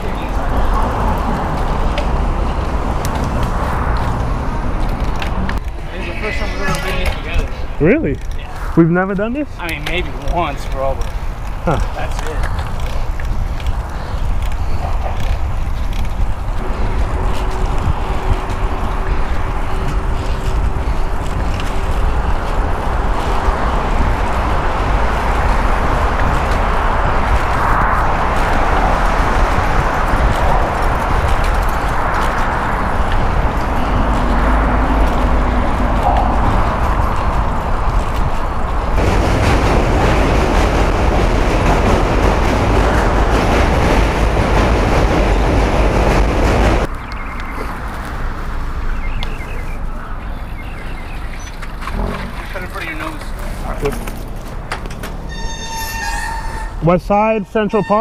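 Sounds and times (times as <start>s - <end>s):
wind rushing over microphone: 0.0s - 55.3s
bicycle road noise: 0.0s - 58.0s
train clattering past: 16.6s - 47.0s.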